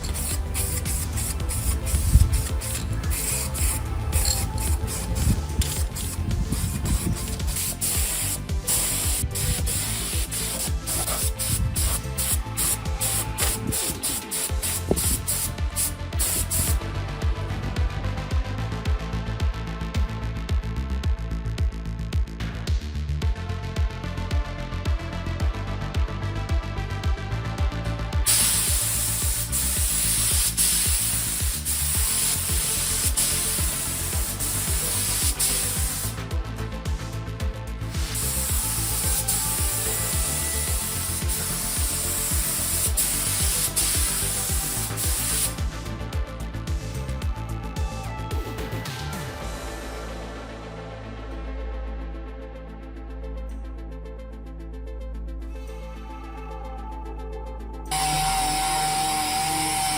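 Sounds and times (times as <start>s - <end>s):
steady high hiss: 0.0s - 16.8s, 37.9s - 45.6s
electronic music with pumping bass: 0.0s - 55.4s, 56.4s - 59.9s.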